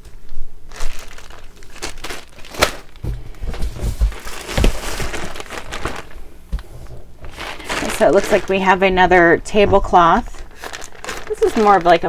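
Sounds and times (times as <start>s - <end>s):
plastic packaging crinkling: 0.0s - 12.0s
dull bumps: 3.0s - 10.3s.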